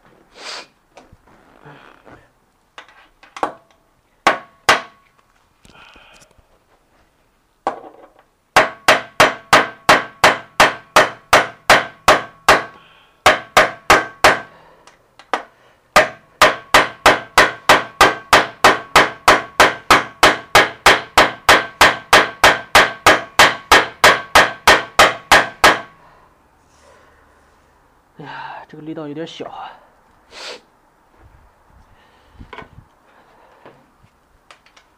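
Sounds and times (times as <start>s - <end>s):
hammer striking metal: 4.3s - 5.0s, 8.6s - 14.5s, 16.0s - 26.0s.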